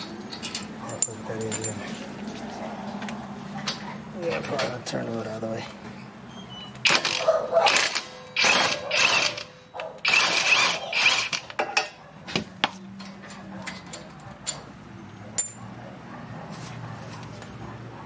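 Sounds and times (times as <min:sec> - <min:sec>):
hand tools clicking and knocking: 0:00.0 - 0:02.0, 0:06.8 - 0:14.7, 0:15.3 - 0:15.7.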